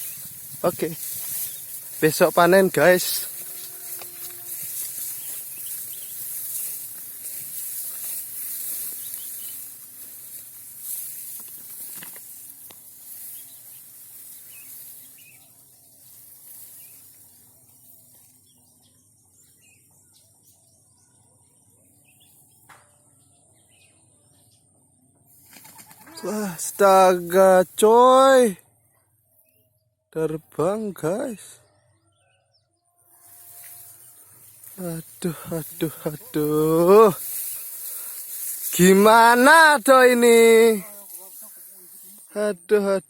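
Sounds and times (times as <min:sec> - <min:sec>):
outdoor hiss and rustle: 0:00.0 - 0:19.8, 0:25.3 - 0:28.4, 0:33.1 - 0:42.4.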